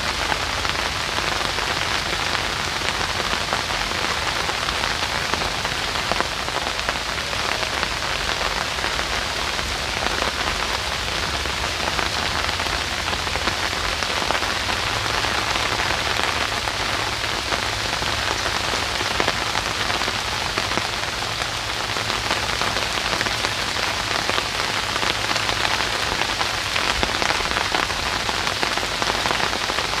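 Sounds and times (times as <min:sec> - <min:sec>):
rain pattering on a deck: 0:00.0 - 0:30.0.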